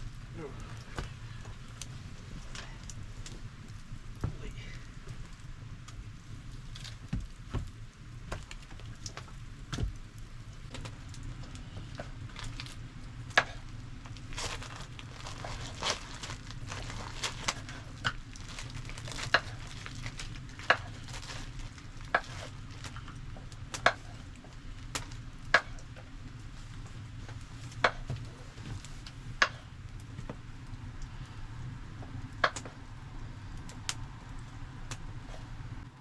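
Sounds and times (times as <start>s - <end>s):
campfire crackling and popping: 0.0s - 36.0s
low rumble: 9.4s - 36.0s.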